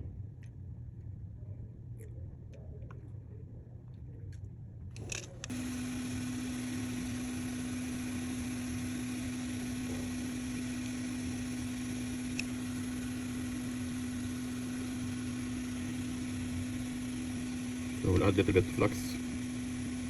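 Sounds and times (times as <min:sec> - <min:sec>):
electric fan motor humming: 0:05.0 - 0:20.0.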